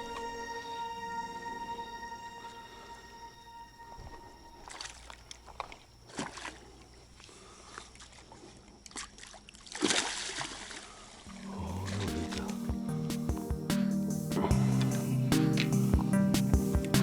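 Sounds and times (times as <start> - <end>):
water sloshing and splashing: 4.0 - 12.9.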